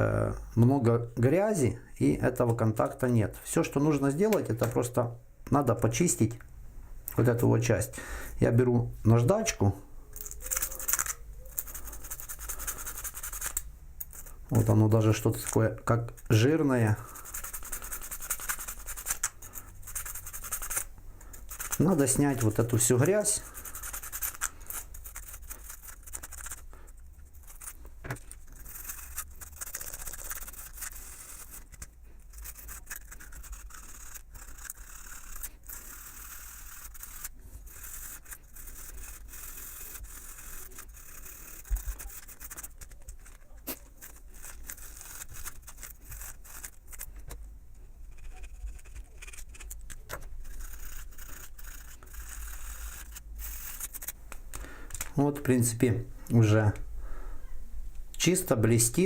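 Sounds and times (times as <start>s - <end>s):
sandpaper scraping on steel: 21.5s - 26.6s, 50.4s - 54.2s.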